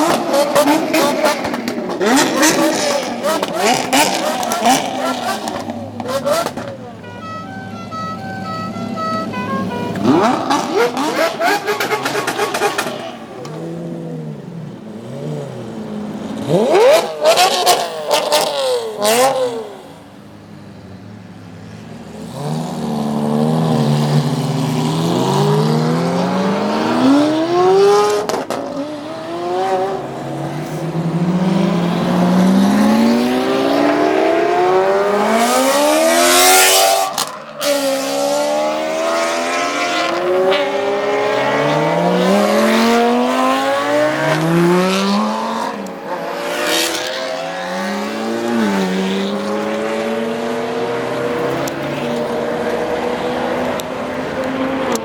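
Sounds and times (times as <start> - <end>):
engine throttle blips: 0.0 - 14.4
cars accelerating away: 0.0 - 55.0.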